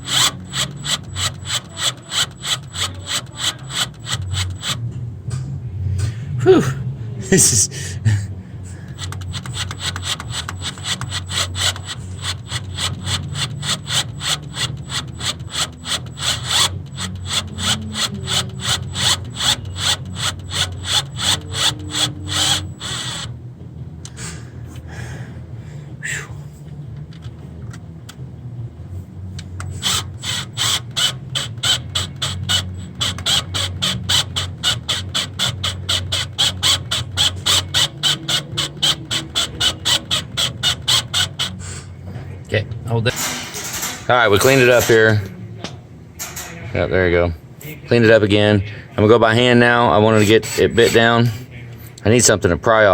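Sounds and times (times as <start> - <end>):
drill bit chattering on bolt: 0.0 - 4.9, 8.8 - 23.4, 29.4 - 41.9, 43.0 - 45.4, 49.2 - 52.2
power drill motor hum: 0.0 - 5.0, 7.2 - 28.0, 29.1 - 42.0.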